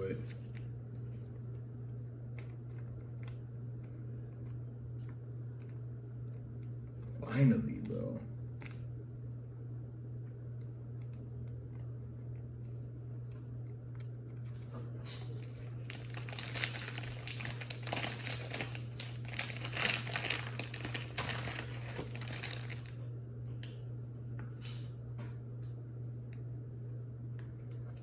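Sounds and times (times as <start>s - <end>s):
steady low hum: 0.0s - 28.0s
foil wrapper crinkling: 15.3s - 23.0s.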